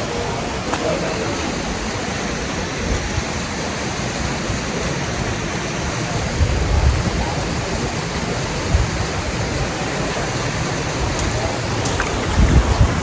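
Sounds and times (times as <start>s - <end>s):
rushing water: 0.0s - 13.0s
wind: 0.0s - 13.0s.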